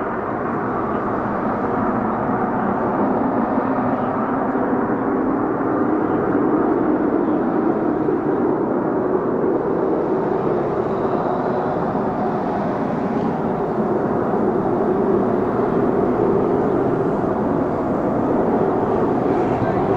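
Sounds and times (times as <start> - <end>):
loud jet engine noise: 0.0 - 19.9.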